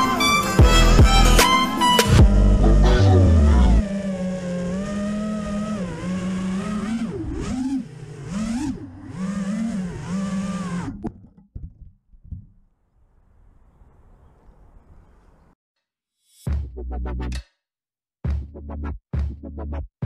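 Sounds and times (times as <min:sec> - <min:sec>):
quadcopter motors whining: 0:00.0 - 0:11.0.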